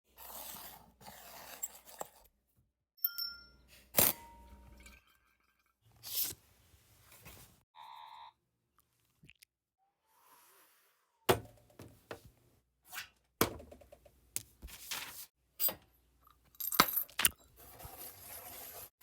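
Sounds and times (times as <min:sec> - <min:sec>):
ringing clink: 0:03.0 - 0:03.6.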